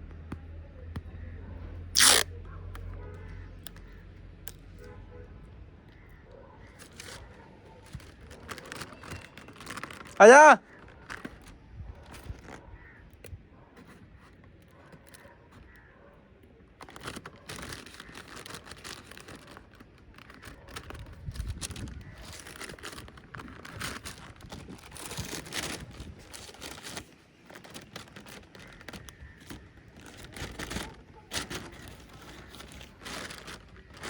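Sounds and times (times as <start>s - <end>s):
paper kite crinkling: 2.0s - 2.3s, 6.6s - 34.0s
wind buffeting microphone: 20.8s - 26.6s.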